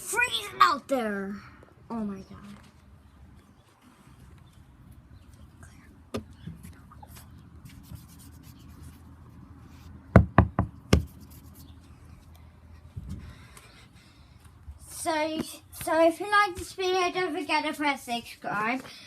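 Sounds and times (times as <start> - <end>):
loud knocks: 10.1 - 11.0.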